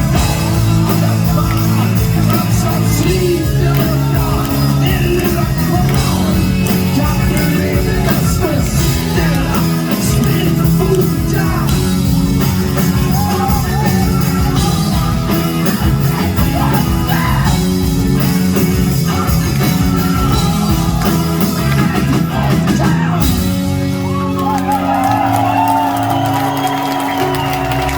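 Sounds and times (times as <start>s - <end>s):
rock band playing: 0.0s - 27.9s
singer shouting vocals: 12.8s - 17.7s, 19.1s - 23.5s.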